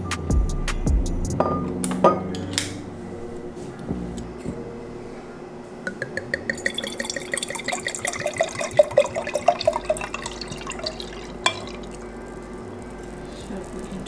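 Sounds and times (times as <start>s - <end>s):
beer glugging into a glass: 5.9s - 12.1s.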